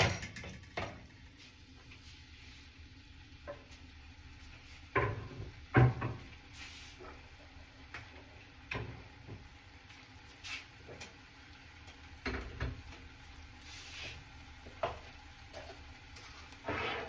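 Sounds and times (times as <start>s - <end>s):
utensils and cookware clunking: 0.0s - 1.1s, 14.8s - 17.0s.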